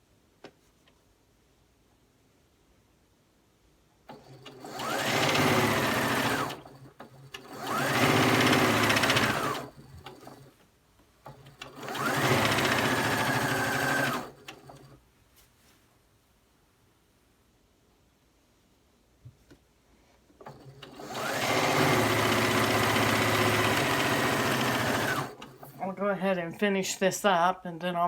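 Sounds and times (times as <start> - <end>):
electric sewing machine stitching: 4.1 - 10.6, 11.2 - 15.0, 20.4 - 26.0.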